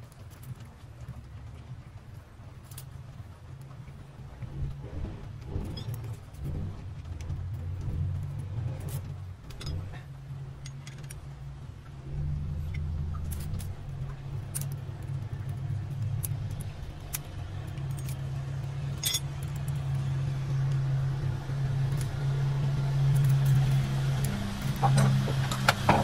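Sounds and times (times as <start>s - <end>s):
sharp metallic clinks: 19.0s - 19.7s.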